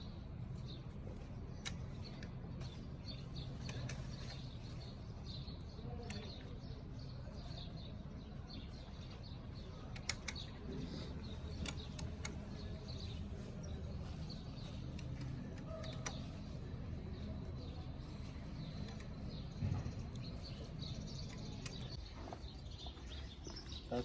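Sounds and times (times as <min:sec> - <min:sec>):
small birds chirping: 0:00.0 - 0:24.0
steady low hum: 0:00.0 - 0:24.0
sharp metallic clicks: 0:01.5 - 0:02.7, 0:09.7 - 0:12.7.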